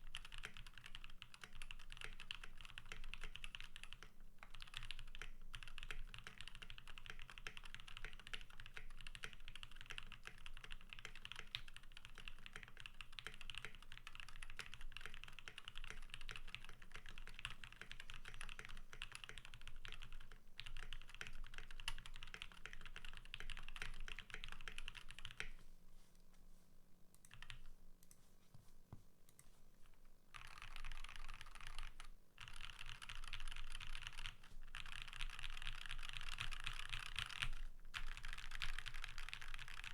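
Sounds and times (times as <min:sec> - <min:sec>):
mechanical keyboard typing: 0:00.0 - 0:25.6, 0:27.2 - 0:27.7, 0:30.3 - 0:39.9.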